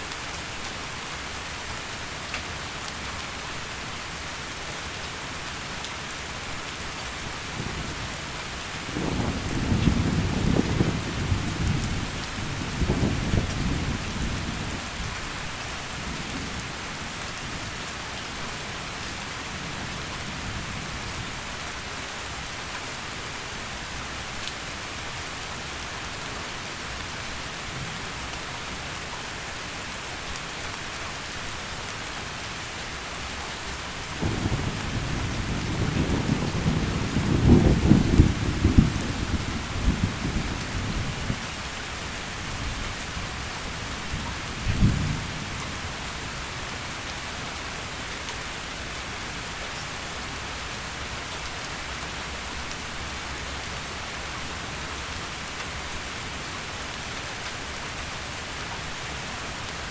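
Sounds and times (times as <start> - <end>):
heavy rain falling: 0.0 - 59.9
thunder rumbling: 8.9 - 14.8, 34.2 - 41.4.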